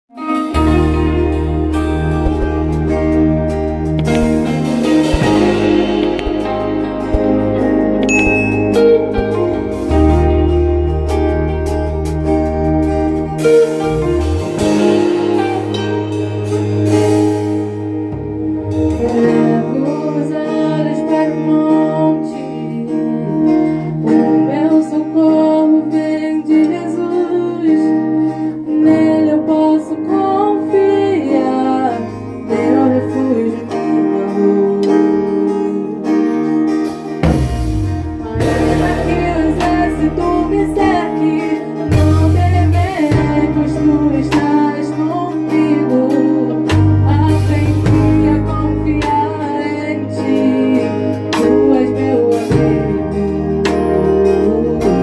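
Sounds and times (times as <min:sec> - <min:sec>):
guitar and held chords: 0:00.1 - 0:55.0
low bass notes and sharp hits: 0:00.4 - 0:19.4, 0:37.1 - 0:44.7, 0:46.6 - 0:49.5.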